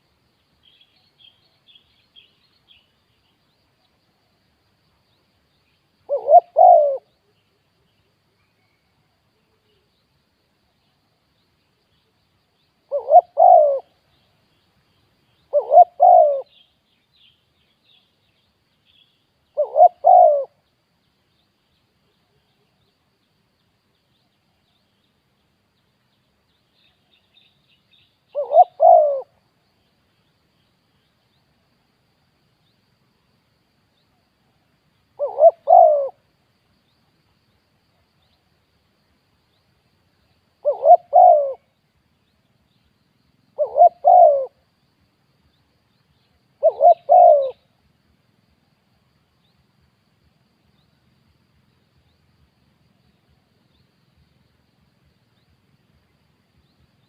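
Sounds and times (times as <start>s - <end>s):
dove cooing: 6.1s - 7.1s, 12.9s - 13.9s, 15.5s - 16.6s, 19.6s - 20.6s, 28.3s - 29.3s, 35.2s - 36.2s, 40.6s - 41.6s, 43.6s - 44.6s, 46.6s - 47.6s.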